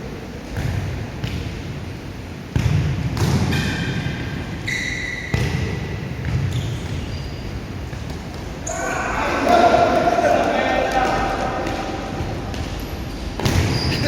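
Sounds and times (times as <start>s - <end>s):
reverberant court rumble: 0.0s - 14.0s
ball thudding on indoor court: 0.4s - 1.8s, 2.5s - 14.0s
shoe squeaks: 4.6s - 5.5s, 6.4s - 7.8s, 13.5s - 14.0s.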